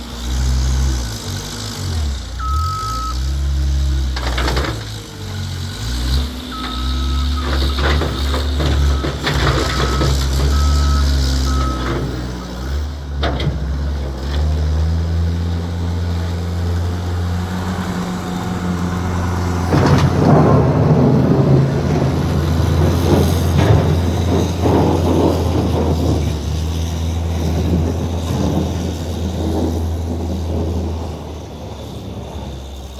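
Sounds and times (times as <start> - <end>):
loud rough machine noise: 0.0 - 32.9
skid steer engine running: 0.0 - 32.9
reversing alarm beeping: 2.4 - 3.4, 6.4 - 12.2.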